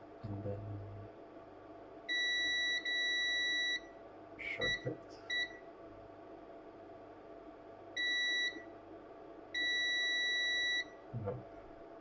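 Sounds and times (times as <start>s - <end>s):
multimeter continuity beeps: 2.1s - 3.9s, 4.5s - 5.6s, 8.0s - 8.6s, 9.6s - 10.9s.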